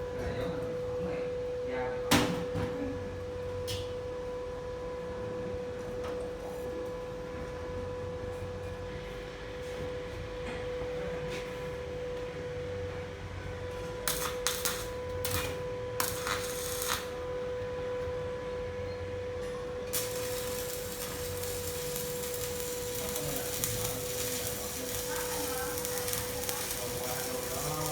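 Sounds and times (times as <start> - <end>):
steady high-pitched hum: 2.9 - 27.9
welding arc crackling: 14.0 - 17.4, 19.9 - 27.9.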